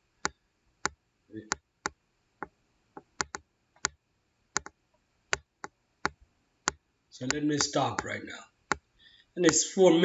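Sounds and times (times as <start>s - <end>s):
keyboard keys clicking: 9.4s - 9.7s.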